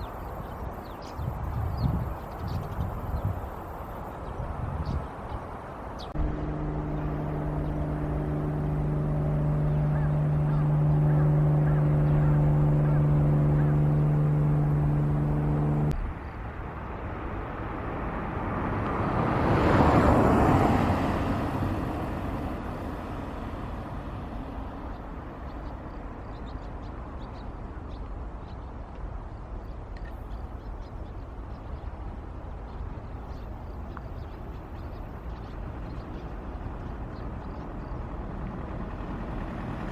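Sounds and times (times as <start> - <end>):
background traffic noise: 0.0 - 39.9
motor vehicle passing: 5.8 - 27.2, 30.4 - 39.9
low droning tone: 6.1 - 16.0.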